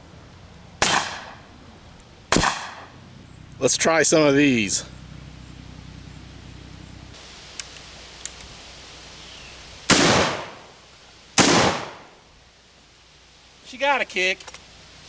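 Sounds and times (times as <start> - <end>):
shotgun blasts: 0.8 - 1.4, 2.3 - 2.9, 9.9 - 10.8, 11.4 - 12.2
faint clicks: 7.5 - 8.6, 14.4 - 14.7.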